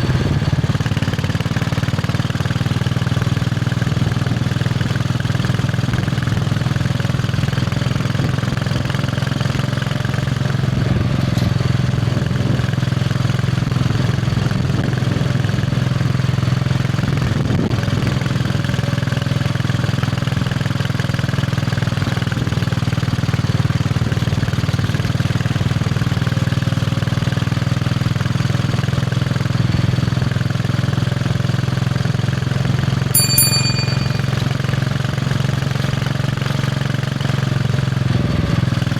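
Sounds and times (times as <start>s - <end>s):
brief high ping: 33.2s - 34.6s.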